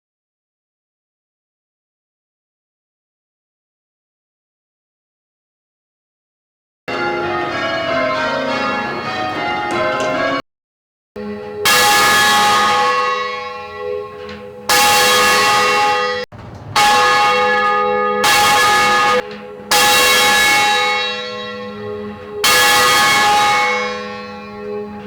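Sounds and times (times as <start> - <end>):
tower bells ringing: 6.9 - 10.4, 11.2 - 25.0.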